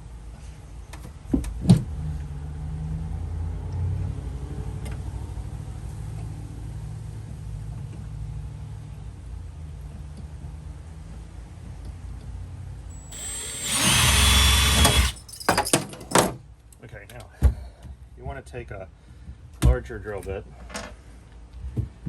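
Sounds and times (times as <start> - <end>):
low motor hum: 12.9 - 15.2.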